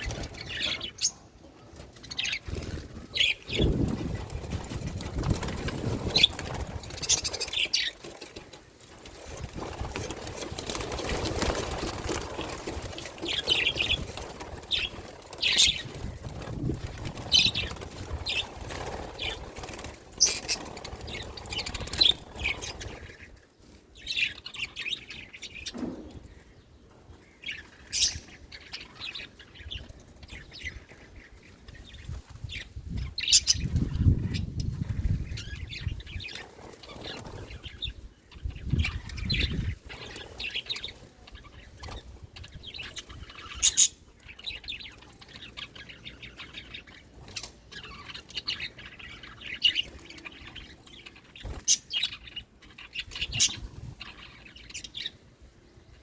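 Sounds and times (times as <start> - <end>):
birds rustling and fluttering: 0.0 - 56.0
budgerigars chirping: 35.3 - 55.2.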